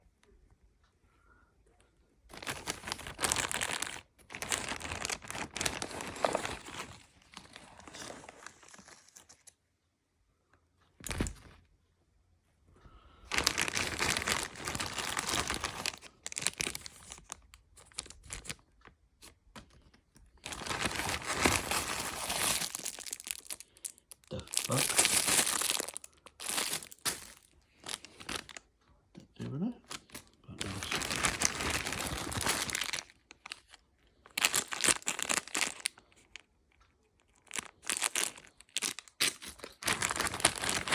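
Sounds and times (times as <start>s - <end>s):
packaging tearing and crumpling: 2.3s - 9.5s, 13.3s - 18.7s, 20.4s - 28.6s, 29.9s - 36.5s, 37.2s - 40.9s.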